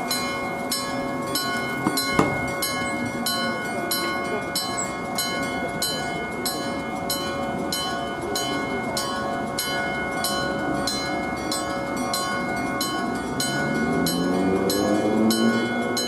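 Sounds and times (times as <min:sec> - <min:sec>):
level-crossing warning alarm: 0:00.0 - 0:03.8
electric crossing bell ringing: 0:00.0 - 0:16.0
train rumbling: 0:00.0 - 0:16.0.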